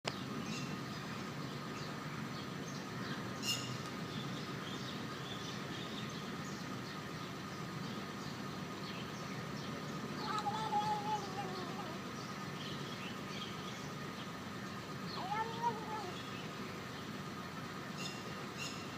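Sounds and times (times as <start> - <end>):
kitten chirping: 10.2 - 12.0, 15.2 - 16.3.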